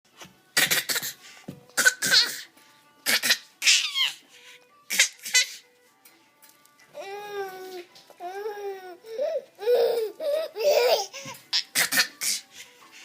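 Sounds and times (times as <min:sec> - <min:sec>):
child fake coughing: 0:00.6 - 0:01.2, 0:01.8 - 0:03.8, 0:11.0 - 0:12.5.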